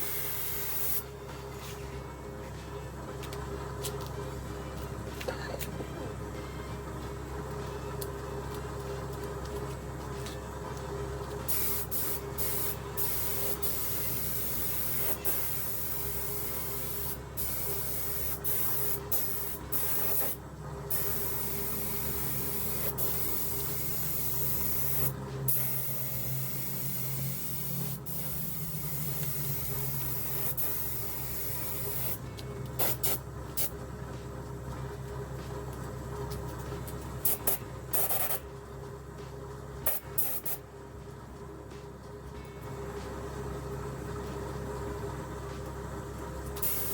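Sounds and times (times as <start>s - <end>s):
spray gun hissing: 11.5s - 32.2s, 46.6s - 46.9s.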